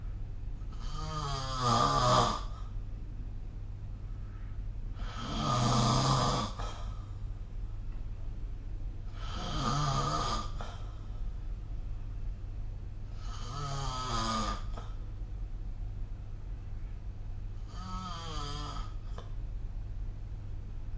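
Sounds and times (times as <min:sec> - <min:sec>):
steady low hum: 0:00.0 - 0:20.9
person snoring: 0:00.7 - 0:02.7, 0:05.0 - 0:07.0, 0:09.1 - 0:10.8, 0:13.1 - 0:14.9, 0:17.6 - 0:19.1.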